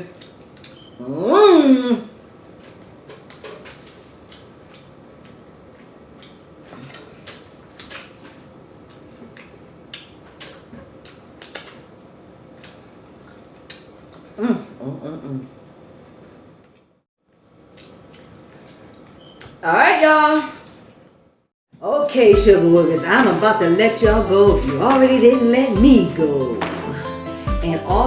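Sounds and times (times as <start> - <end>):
chewing and lip-smacking: 4.2 - 14.4, 17.7 - 19.5.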